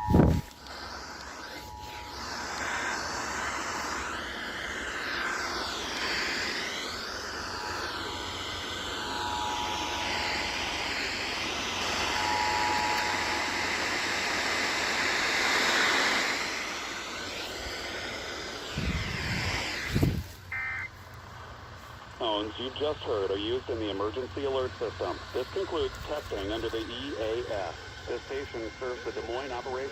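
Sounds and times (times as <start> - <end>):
radio static and hiss: 0.0 - 29.9
two-tone alert signal: 20.6 - 20.9.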